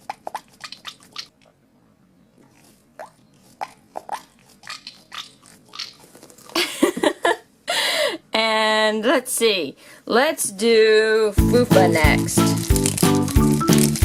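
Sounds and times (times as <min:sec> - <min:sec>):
squishy toy squelching: 0:00.0 - 0:01.6, 0:02.4 - 0:06.6, 0:11.7 - 0:14.0.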